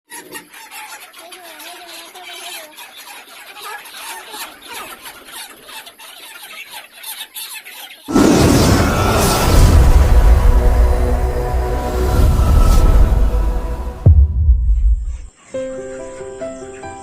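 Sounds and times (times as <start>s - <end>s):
chickens squawking and cheeping: 0.1s - 8.1s, 15.1s - 17.0s
loud music: 8.8s - 15.3s.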